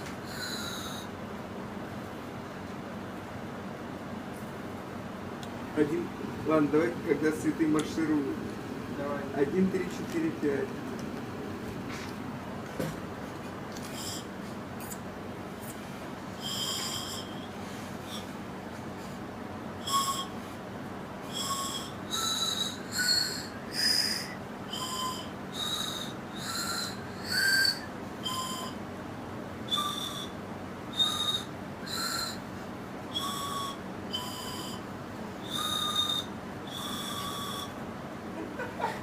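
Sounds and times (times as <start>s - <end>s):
person whistling a tune: 0.3s - 1.1s, 16.4s - 18.3s, 19.8s - 20.4s, 21.3s - 28.8s, 29.7s - 32.4s, 33.1s - 37.8s.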